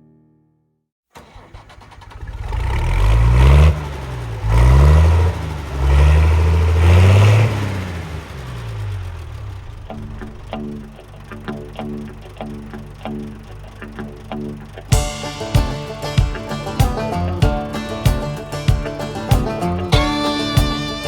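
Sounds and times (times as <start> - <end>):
engine starting and revving: 1.2 - 21.0
guitar music: 9.8 - 21.0.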